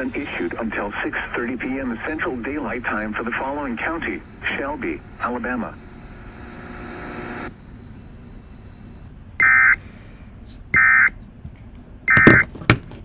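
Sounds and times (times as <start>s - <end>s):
steady hum: 0.0s - 13.0s
buzzy digital data bursts: 1.4s - 7.6s.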